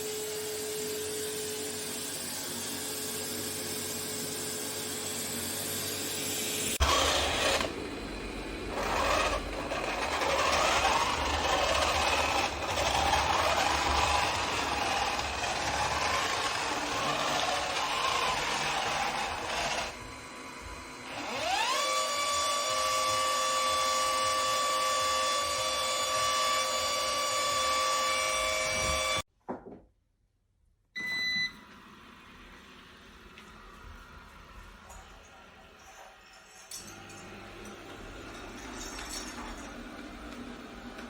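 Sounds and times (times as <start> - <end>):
robot vacuum whirring: 4.6 - 29.2
robot vacuum hissing: 5.6 - 24.5.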